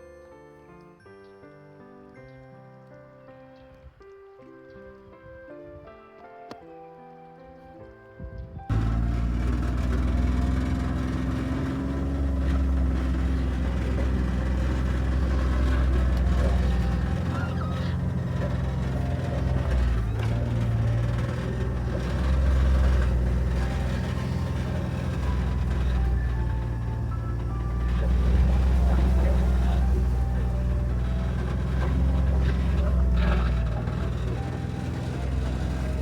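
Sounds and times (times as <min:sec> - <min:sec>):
vehicle engine droning: 0:08.6 - 0:36.0.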